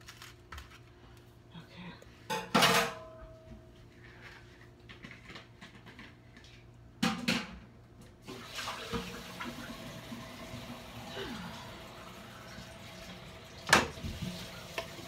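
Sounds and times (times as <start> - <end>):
water running from tap: 8.2 - 15.0.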